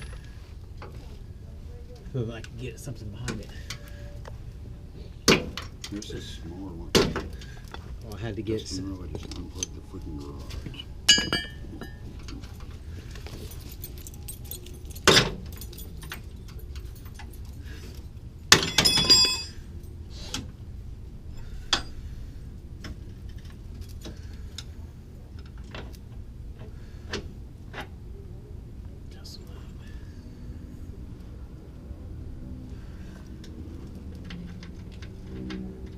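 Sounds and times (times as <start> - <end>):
tools and metal parts clinking: 0.0 - 0.4, 8.6 - 20.0, 21.4 - 22.0, 33.2 - 35.9
low hum: 0.0 - 35.9
loud metal clanks: 18.5 - 19.6.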